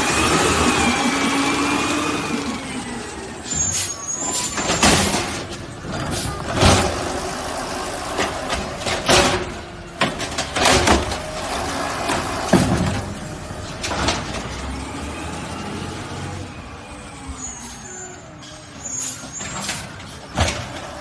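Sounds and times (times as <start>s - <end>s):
garbage truck engine running: 0.0s - 21.0s
loud metallic bangs and clanks: 4.3s - 14.7s.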